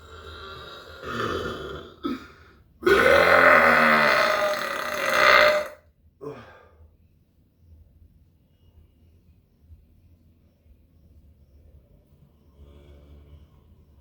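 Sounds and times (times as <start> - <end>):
man burping: 0.1 - 6.6.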